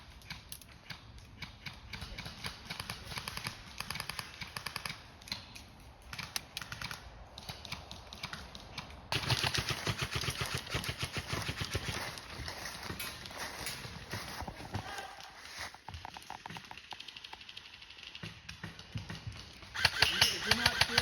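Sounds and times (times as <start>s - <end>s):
airsoft guns firing full-auto: 1.4s - 5.1s, 6.1s - 12.2s, 19.6s - 21.0s.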